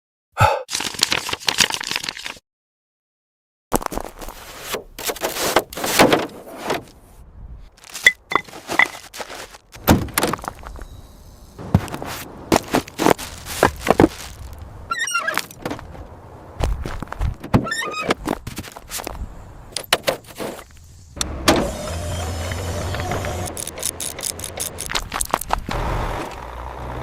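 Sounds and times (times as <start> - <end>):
scraping noises: 4.1 - 7.2, 11.6 - 16.0, 20.0 - 20.8.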